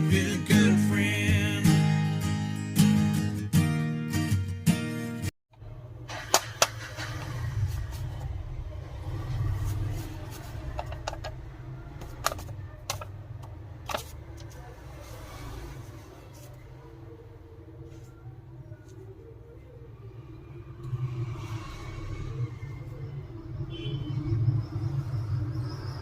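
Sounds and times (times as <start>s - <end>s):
small tools clicking and tapping: 10.7s - 11.4s.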